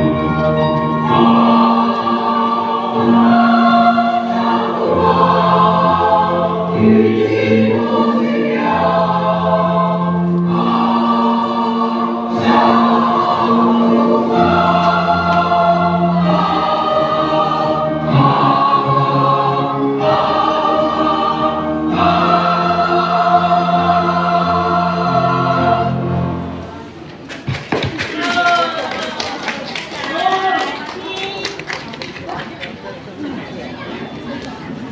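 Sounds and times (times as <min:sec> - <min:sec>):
choir singing held chords: 0:00.0 - 0:27.0.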